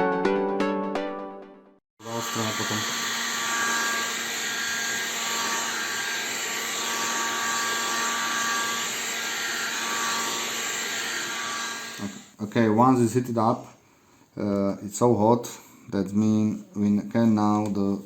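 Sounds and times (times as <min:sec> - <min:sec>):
heat gun blowing: 0:02.0 - 0:12.4.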